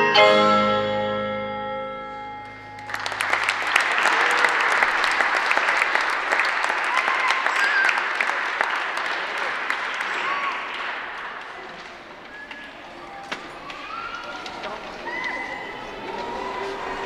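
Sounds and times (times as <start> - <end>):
mallet percussion chord ringing: 0.0 - 3.2
audience applause: 2.8 - 17.0
audience cheering: 2.8 - 17.0.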